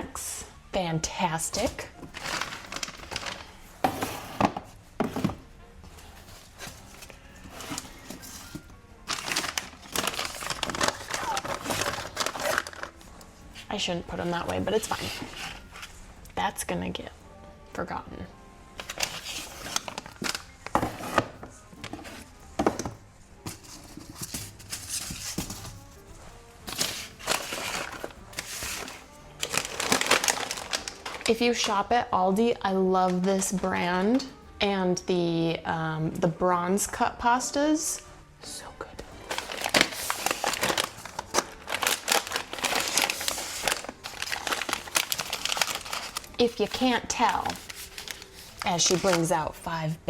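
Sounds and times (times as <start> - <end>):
background music: 0.0 - 50.0
food packages knocking and rustling: 1.8 - 5.5, 6.2 - 13.0, 18.8 - 25.9, 26.7 - 31.3, 39.2 - 46.3
pasta bags crinkling: 1.9 - 3.6, 6.4 - 13.1, 18.8 - 22.2, 26.6 - 31.8, 39.2 - 49.4.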